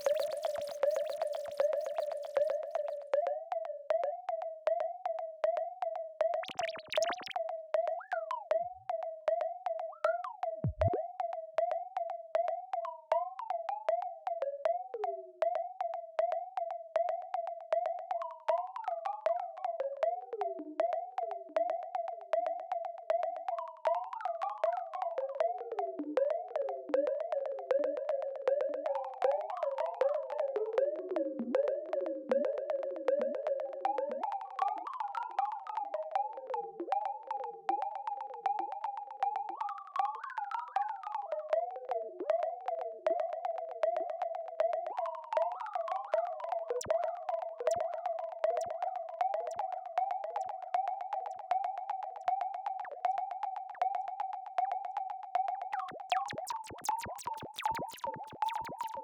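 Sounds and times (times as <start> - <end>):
falling electronic bleeps and chirps: 6.4 - 7.4, 10.6 - 11.0, 55.8 - 59.0
pulsing electronic tone: 6.4 - 7.4, 55.8 - 59.0.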